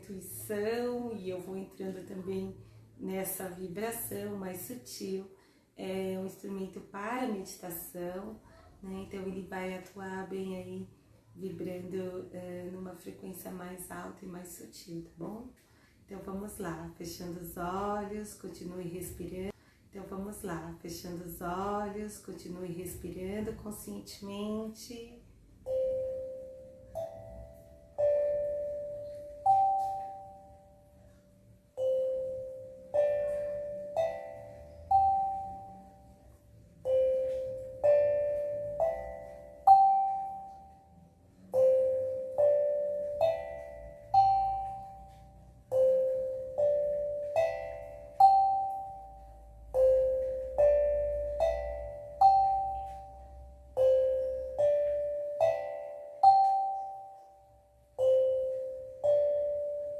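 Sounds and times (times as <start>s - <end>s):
steel tongue drum notes: 25.6s - 59.9s.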